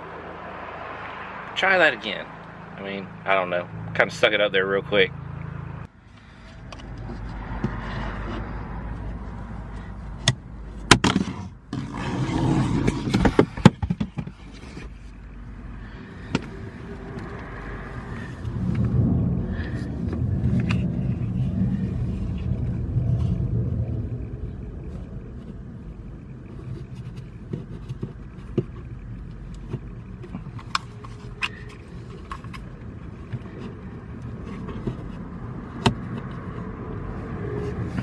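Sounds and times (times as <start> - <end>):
low vehicle rumble: 0.0 - 38.0.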